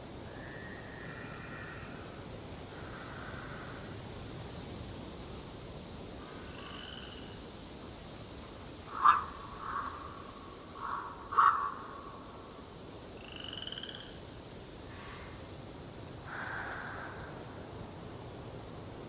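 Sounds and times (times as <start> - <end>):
steady background hiss: 0.0 - 19.0
harsh bird calls: 10.8 - 12.1.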